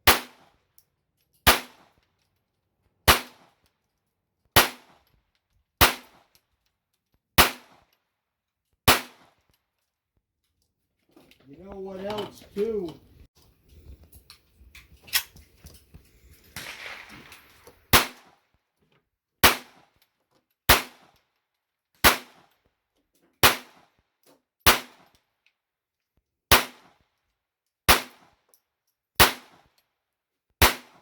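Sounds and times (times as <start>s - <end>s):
pistol shots: 0.0s - 0.5s, 1.5s - 1.9s, 3.1s - 3.5s, 4.6s - 5.0s, 5.8s - 6.2s, 7.4s - 7.8s, 8.9s - 9.4s, 16.5s - 18.3s, 19.4s - 19.8s, 20.7s - 21.1s, 22.0s - 22.4s, 23.4s - 23.8s, 24.7s - 25.0s, 26.5s - 26.9s, 27.9s - 28.2s, 29.2s - 29.6s, 30.6s - 31.0s.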